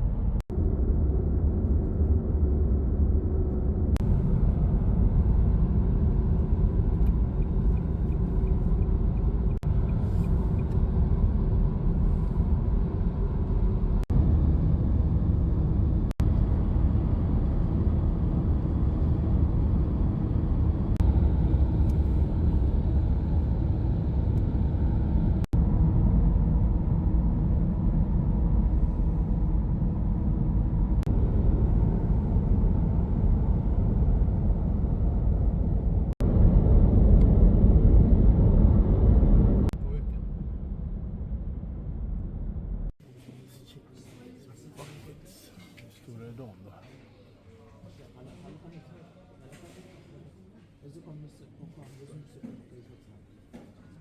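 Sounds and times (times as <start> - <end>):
car cabin road and engine rumble: 3.4 - 25.5.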